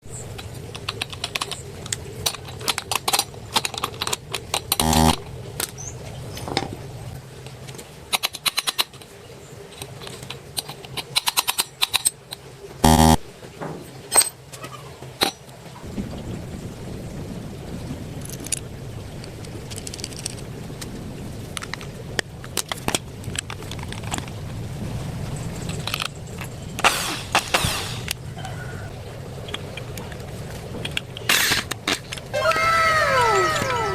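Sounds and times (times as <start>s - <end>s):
sharp clicks and knocks: 0.1s - 5.8s, 7.4s - 9.1s, 9.7s - 14.4s.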